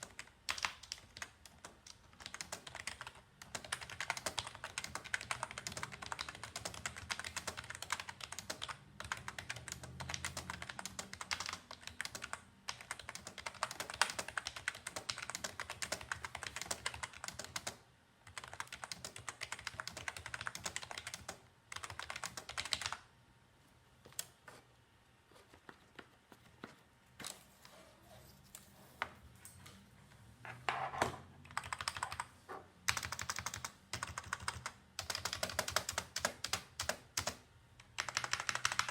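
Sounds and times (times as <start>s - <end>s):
keyboard typing: 0.0s - 23.1s, 31.4s - 38.9s.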